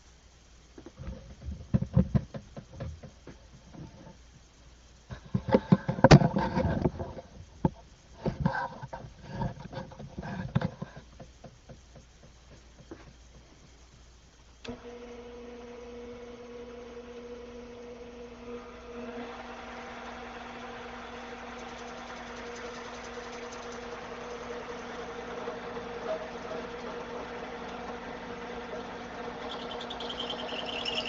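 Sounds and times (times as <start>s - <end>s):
lathe motor humming: 14.7s - 31.0s
rough noisy grinding sound: 18.4s - 31.0s.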